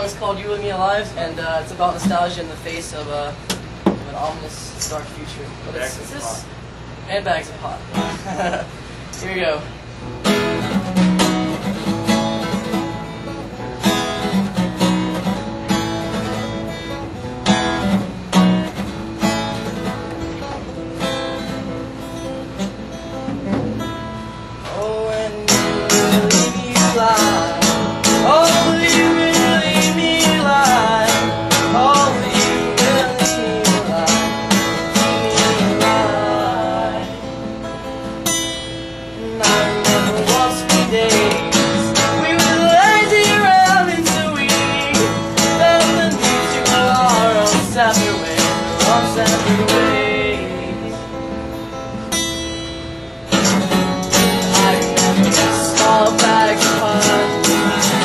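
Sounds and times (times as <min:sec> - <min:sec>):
strummed guitar: 0:07.7 - 0:58.0
person singing: 0:24.7 - 0:37.2, 0:39.2 - 0:51.1, 0:54.1 - 0:58.0.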